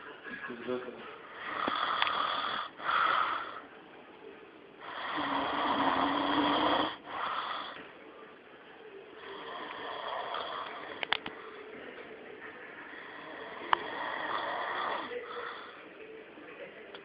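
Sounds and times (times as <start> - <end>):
noisy breaths: 1.0 - 3.8, 4.8 - 8.0, 9.1 - 16.2
man snoring: 1.4 - 3.6, 4.8 - 7.8, 9.3 - 11.0, 13.1 - 15.2.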